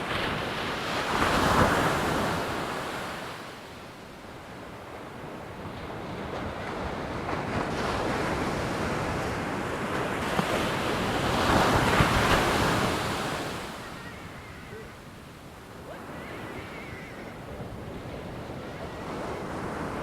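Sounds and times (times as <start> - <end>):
ocean wave breaking: 6.0 - 20.0.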